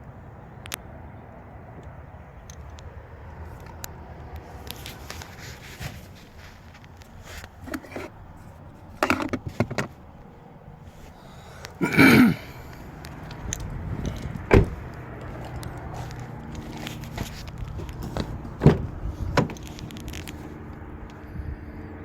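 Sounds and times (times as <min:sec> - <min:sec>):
sharp thump: 0:14.5 - 0:14.8.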